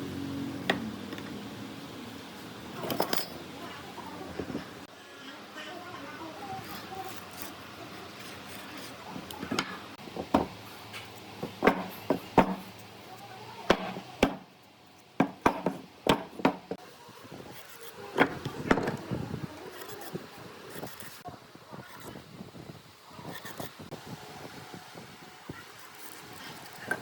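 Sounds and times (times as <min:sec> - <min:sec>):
sharp knocks on wood: 0:11.4 - 0:12.7, 0:13.7 - 0:14.5, 0:15.2 - 0:16.8.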